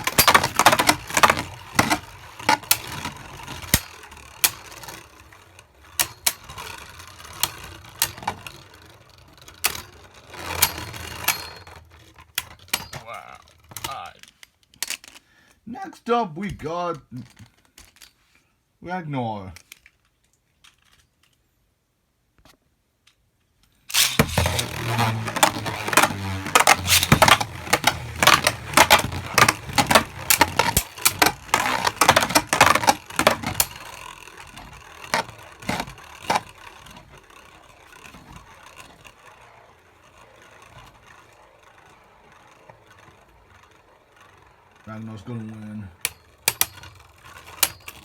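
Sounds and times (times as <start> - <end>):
spinning tops clashing: 0.0 - 4.9, 23.9 - 44.7
spinning tops scraping and rattling: 0.0 - 15.2, 23.9 - 48.0.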